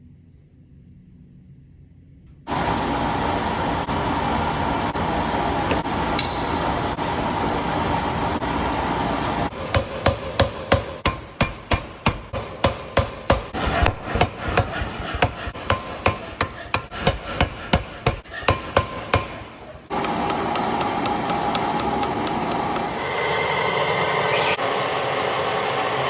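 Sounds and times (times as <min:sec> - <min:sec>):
power hammer striking steel: 0:04.8 - 0:07.7, 0:09.4 - 0:23.5.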